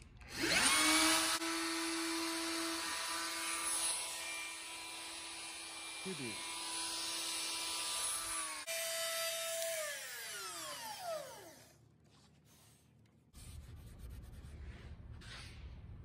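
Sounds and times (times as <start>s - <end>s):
router motor whine spinning down: 0.3s - 11.8s.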